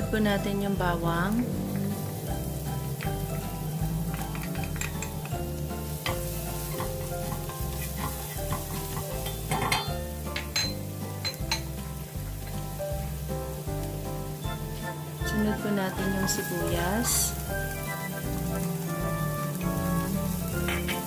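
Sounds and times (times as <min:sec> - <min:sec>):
garlic sizzling in hot oil: 0:00.0 - 0:21.0
utensil scraping against pan: 0:04.1 - 0:09.9.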